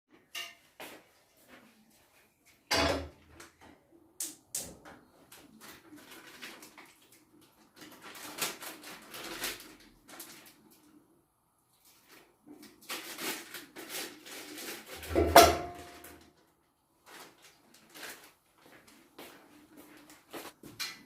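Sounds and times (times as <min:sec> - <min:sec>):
pots and dishes clattering: 0:00.3 - 0:00.6, 0:02.7 - 0:03.2, 0:14.9 - 0:16.2.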